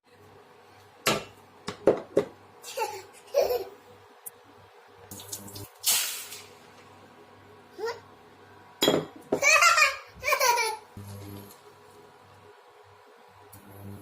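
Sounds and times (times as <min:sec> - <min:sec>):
kitchen clattering: 0:08.8 - 0:09.6
child laughing and squealing: 0:09.4 - 0:10.9
noisy burst: 0:13.6 - 0:14.0.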